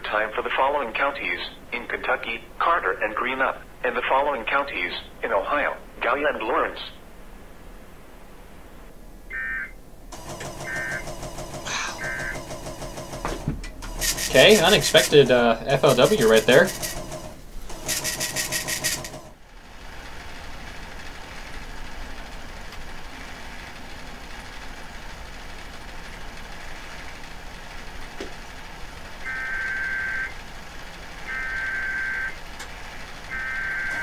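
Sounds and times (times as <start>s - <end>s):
radio hiss: 14.0s - 16.7s.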